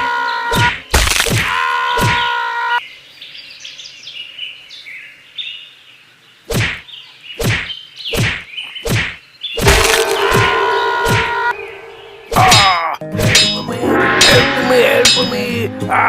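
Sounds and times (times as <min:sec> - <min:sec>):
faint bird chirping: 0:01.8 - 0:13.0
steady ringing tone: 0:09.7 - 0:12.3.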